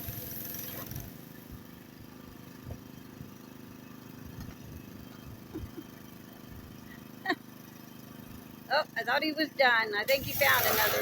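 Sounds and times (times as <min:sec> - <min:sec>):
pressure washer engine running: 0:00.0 - 0:11.0
water spray hissing: 0:10.1 - 0:11.0.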